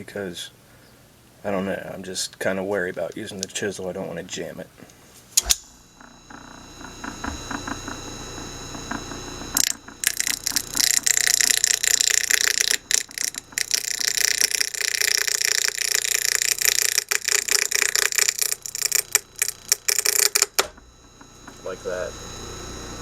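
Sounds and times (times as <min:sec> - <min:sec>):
electric motor humming: 0:05.2 - 0:23.0
chisel scraping spinning wood: 0:05.4 - 0:23.0.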